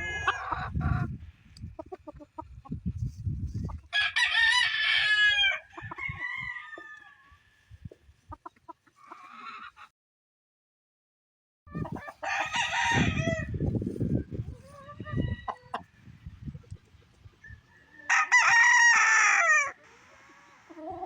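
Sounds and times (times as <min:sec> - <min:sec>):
rooster crowing: 0:04.0 - 0:07.3, 0:12.2 - 0:13.5, 0:17.5 - 0:19.8.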